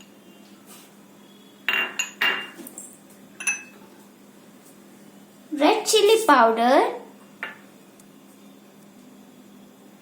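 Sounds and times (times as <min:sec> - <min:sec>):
spoon clinking against a dish: 0:01.7 - 0:02.6, 0:03.4 - 0:03.8.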